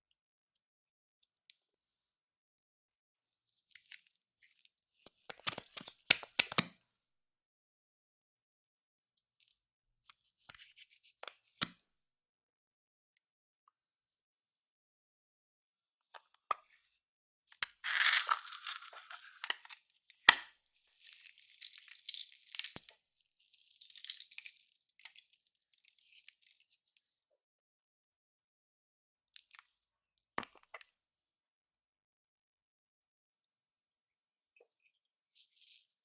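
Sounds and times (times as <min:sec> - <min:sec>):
slime crackling and tearing: 0:17.8 - 0:19.7.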